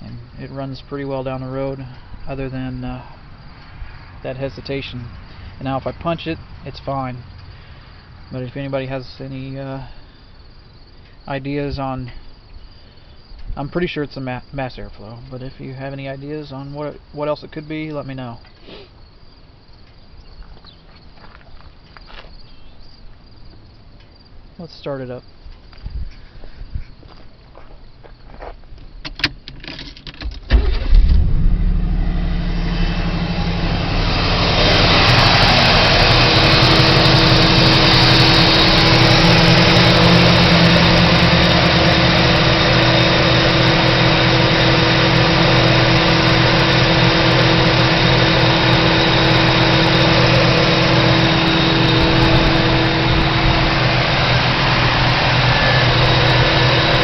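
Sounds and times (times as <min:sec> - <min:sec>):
engine cranking and starting: 0:29.1 - 0:57.0
engine idling roughly: 0:30.5 - 0:57.0.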